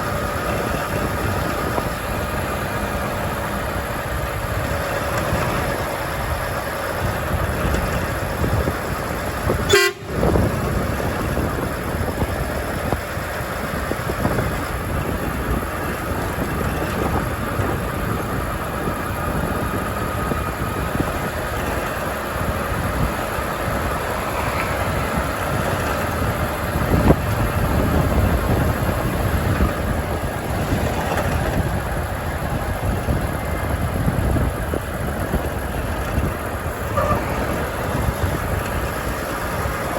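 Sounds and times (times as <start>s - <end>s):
truck engine: 0.0s - 39.9s.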